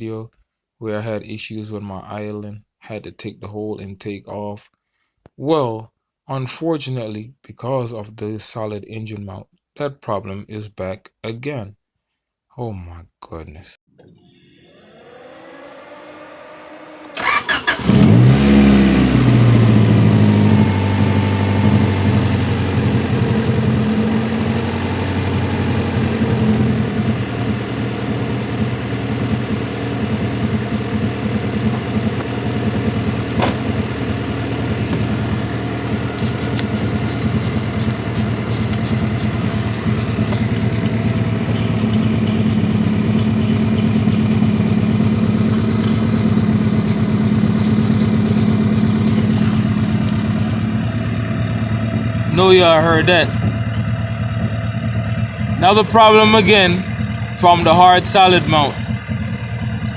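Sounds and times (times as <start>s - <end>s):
car engine cranking and starting: 14.0s - 59.9s
car engine high idle: 14.4s - 59.9s.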